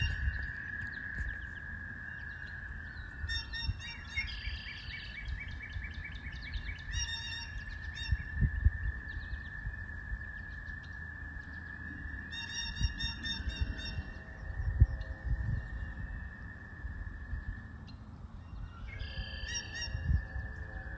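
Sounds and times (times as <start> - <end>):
low rumble: 0.0 - 3.2, 11.4 - 19.3.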